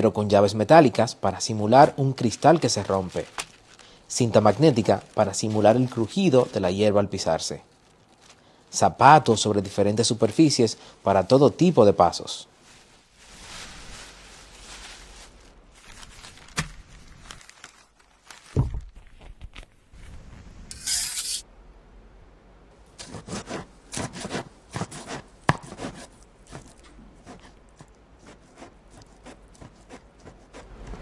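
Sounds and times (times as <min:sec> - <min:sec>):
clicks and rustles: 0:02.2 - 0:03.9
rubbing scrapes: 0:20.0 - 0:21.4, 0:23.0 - 0:31.0
sharp knocks: 0:25.5 - 0:25.8.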